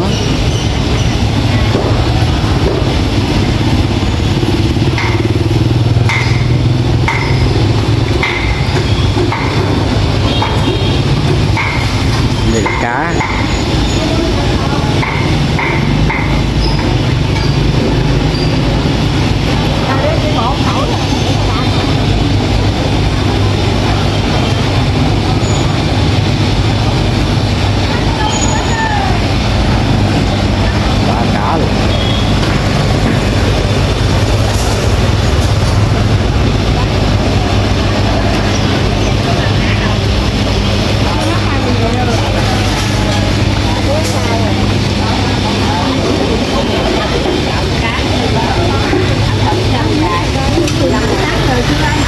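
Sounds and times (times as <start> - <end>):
motorbike engine running: 0.0 - 52.0
open market noise: 0.0 - 52.0
loud low rumble: 14.2 - 52.0.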